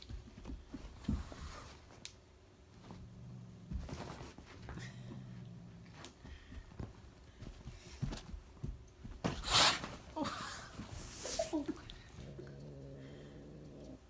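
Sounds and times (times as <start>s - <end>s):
cat hissing: 9.3s - 10.1s.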